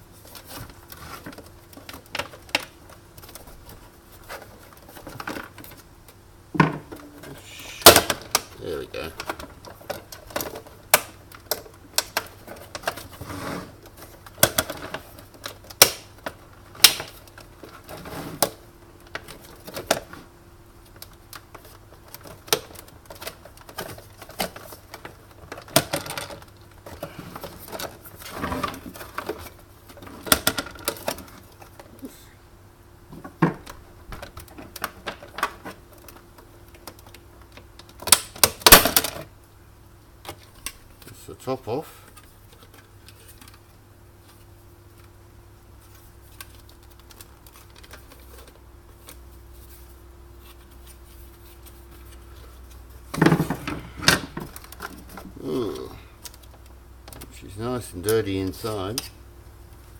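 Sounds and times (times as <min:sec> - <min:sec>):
machine parts being taken apart: 0:45.8 - 0:57.3.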